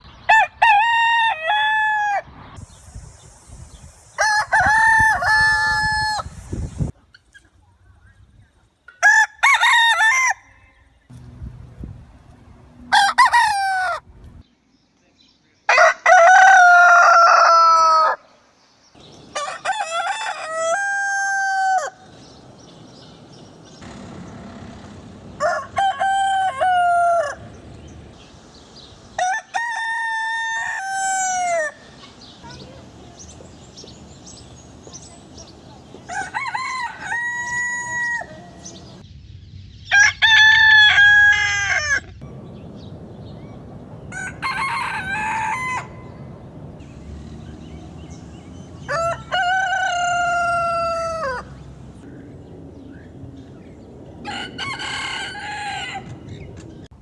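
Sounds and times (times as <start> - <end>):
roosters crowing: 0.2 - 2.4, 4.2 - 6.4, 9.0 - 11.0, 12.8 - 14.2, 15.7 - 18.4, 19.0 - 35.1, 35.8 - 39.0, 39.9 - 42.3, 44.0 - 52.5, 53.8 - 56.7.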